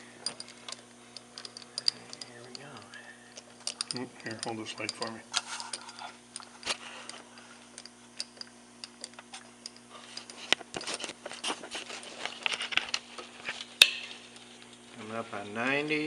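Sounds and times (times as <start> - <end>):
faint steady hum: 0.0 - 16.0
clicks and metal taps: 3.6 - 5.2.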